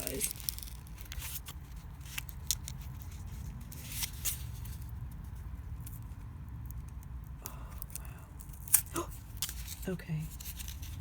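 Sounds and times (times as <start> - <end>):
fingers scratching paper wrapping: 0.0 - 4.9, 7.8 - 11.0
paper rustling: 0.0 - 4.9, 8.8 - 11.0.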